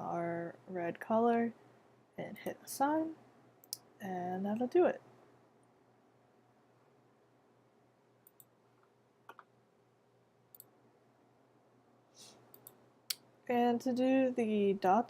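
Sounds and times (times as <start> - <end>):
computer mouse clicks: 8.2 - 9.5, 10.5 - 10.7, 12.5 - 12.8.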